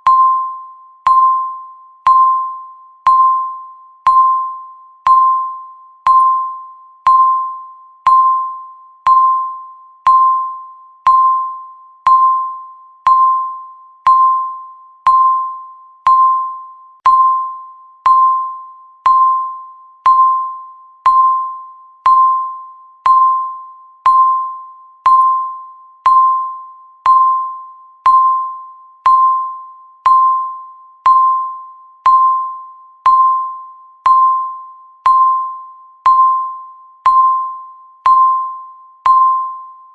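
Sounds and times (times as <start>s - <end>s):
timer ticks with bell-like tone: 0.0s - 39.9s.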